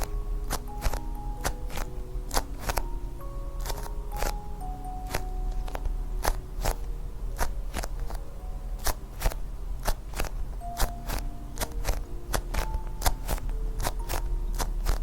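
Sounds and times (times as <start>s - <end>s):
plastic packaging crackling: 0.0s - 3.0s, 5.1s - 15.0s
soft music box tune: 0.0s - 15.0s.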